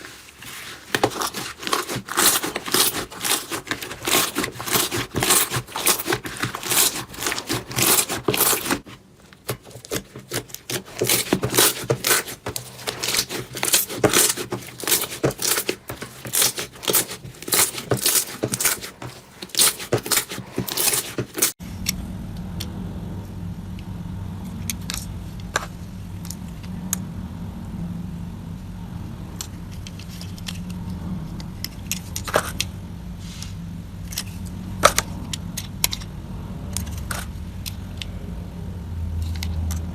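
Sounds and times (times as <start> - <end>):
steady low hum: 21.5 - 39.2.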